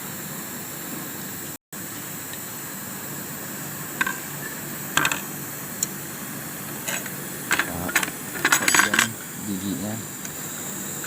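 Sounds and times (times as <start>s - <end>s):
steady background hiss: 0.0s - 11.0s
metal clicks and clinks: 6.9s - 9.2s.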